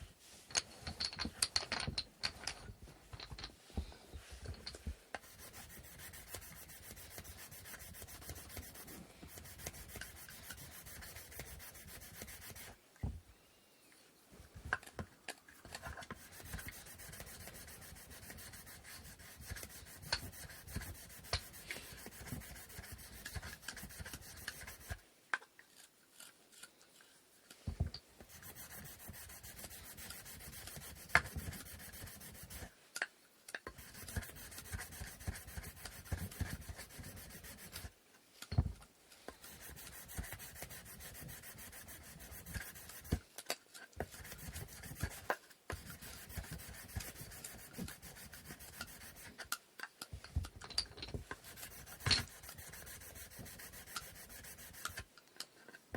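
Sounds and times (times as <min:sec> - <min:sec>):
sandpaper rubbing on wood: 0:05.2 - 0:12.8, 0:15.7 - 0:25.0, 0:28.2 - 0:32.7, 0:33.7 - 0:37.9, 0:39.4 - 0:43.2, 0:44.0 - 0:49.4, 0:51.4 - 0:55.0.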